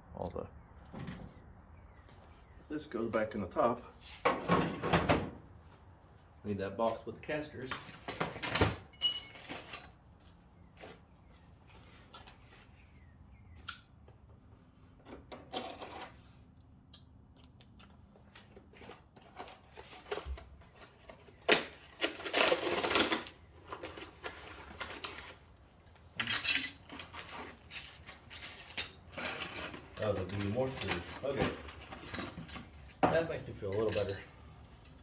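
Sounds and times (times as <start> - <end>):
metal hardware clinking and rattling: 9.0 - 10.4, 26.1 - 35.0
rustling and scraping: 17.9 - 35.0.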